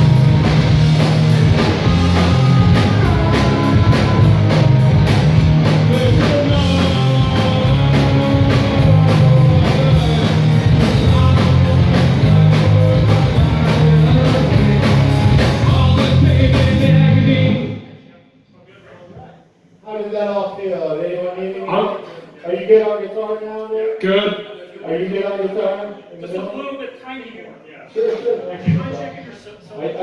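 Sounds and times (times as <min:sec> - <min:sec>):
drum kit with cymbal strokes: 0:00.0 - 0:17.1
bass guitar: 0:00.0 - 0:17.7
electric guitar: 0:00.0 - 0:17.8.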